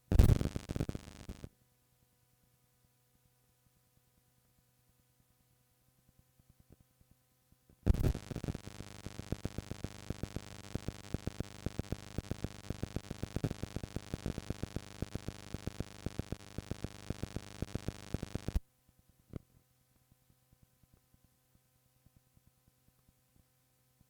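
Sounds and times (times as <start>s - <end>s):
crackling static: 0.0s - 1.5s, 7.8s - 19.6s
tape hiss and hum: 0.0s - 1.5s, 7.8s - 18.7s.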